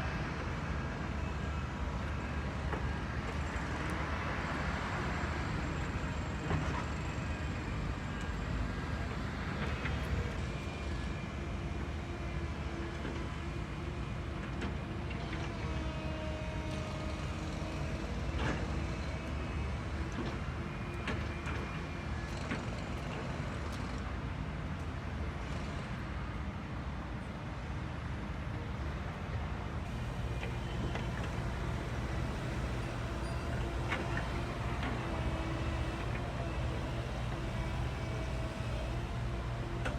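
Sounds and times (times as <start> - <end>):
motor whines: 29.9 - 39.9.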